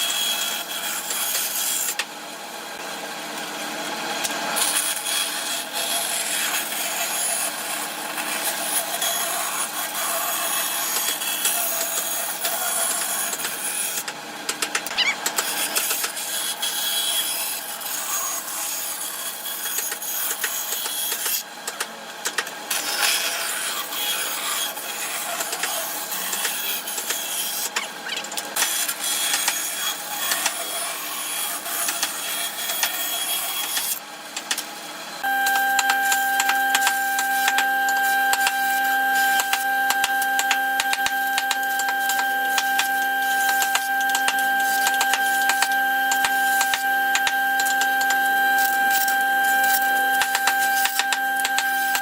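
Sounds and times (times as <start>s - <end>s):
small electric motor whine: 34.8s - 52.0s.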